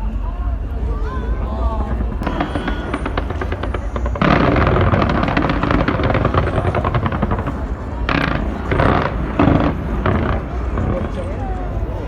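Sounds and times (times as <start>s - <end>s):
low rumble: 0.5s - 12.0s
fireworks crackling: 1.3s - 12.0s.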